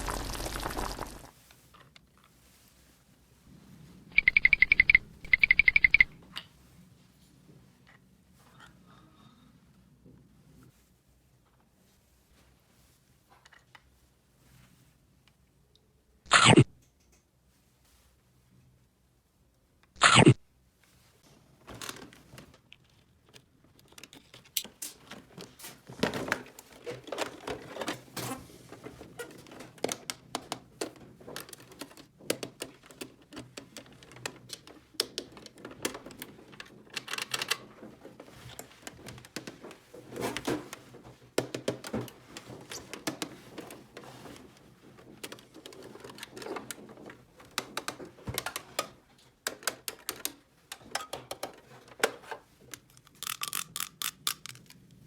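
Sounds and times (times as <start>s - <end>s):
plastic toy pieces clicking: 4.2s - 6.1s, 52.7s - 55.0s.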